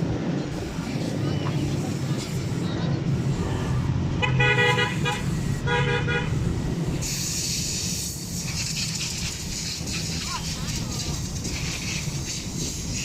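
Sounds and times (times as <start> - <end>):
vehicle horn honking: 4.2 - 6.4
steady hiss: 6.8 - 13.0.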